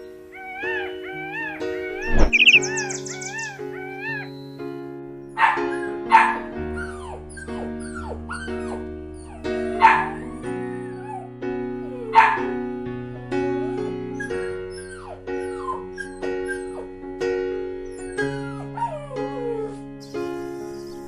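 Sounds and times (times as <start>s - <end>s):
background music: 0.0s - 21.0s
dog yipping and whimpering: 0.3s - 4.5s, 5.4s - 11.3s, 11.9s - 12.6s, 14.2s - 16.9s, 17.9s - 19.8s
dog barking: 0.4s - 4.3s, 5.3s - 11.3s, 11.9s - 12.7s.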